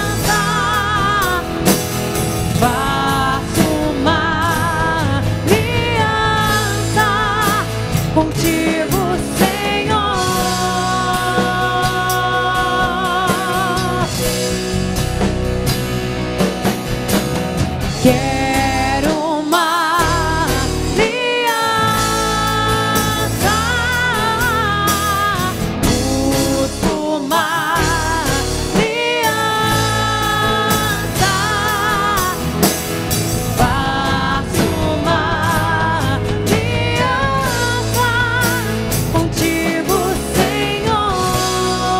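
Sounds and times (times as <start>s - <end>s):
bass line: 0.0s - 19.2s, 20.0s - 21.1s, 21.8s - 27.1s, 27.7s - 41.9s
drum kit: 0.0s - 41.9s.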